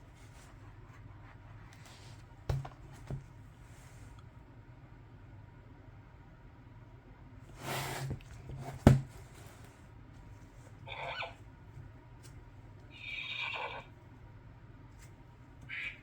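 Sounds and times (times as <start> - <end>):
recorded pony whinny from speaker: 10.9 - 11.4, 12.9 - 13.9.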